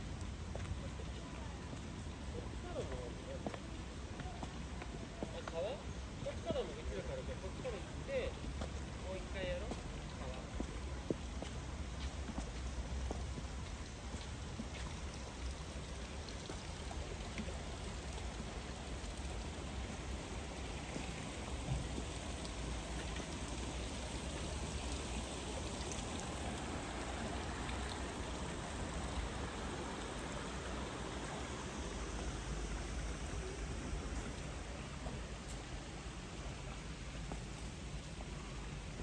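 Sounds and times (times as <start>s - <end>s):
river rushing: 17.8s - 37.2s.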